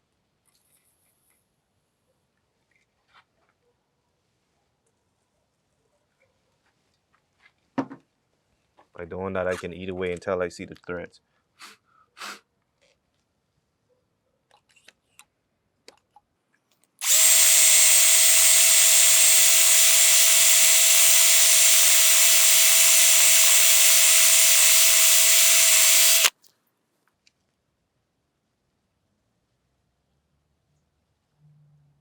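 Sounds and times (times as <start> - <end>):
power drill whining: 17.0 - 26.3.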